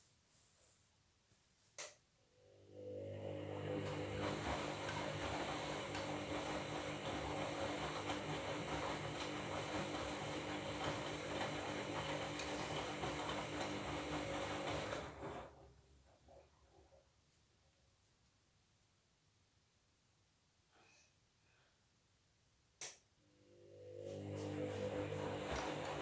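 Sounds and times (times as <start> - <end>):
washing machine hum and drum: 2.5 - 16.4, 23.5 - 26.0.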